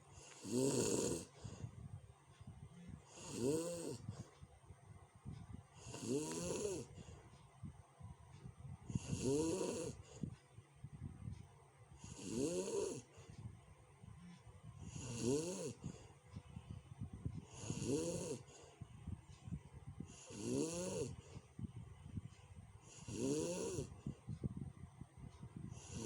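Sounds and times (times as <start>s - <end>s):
person snoring: 0.2s - 1.6s, 3.1s - 4.2s, 5.8s - 7.0s, 8.9s - 10.2s, 12.0s - 13.1s, 14.9s - 16.0s, 17.5s - 18.6s, 20.1s - 21.2s, 22.9s - 24.0s, 25.7s - 26.0s.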